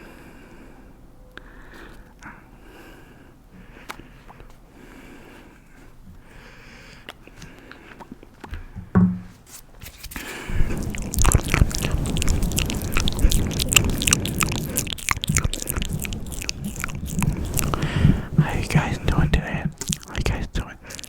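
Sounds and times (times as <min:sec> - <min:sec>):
wet mouth clicks and smacks: 0:10.3 - 0:21.0.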